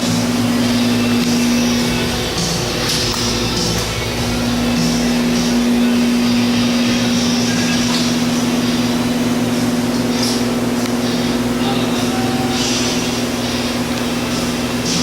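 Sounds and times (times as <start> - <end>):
air compressor humming: 0.0 - 15.0.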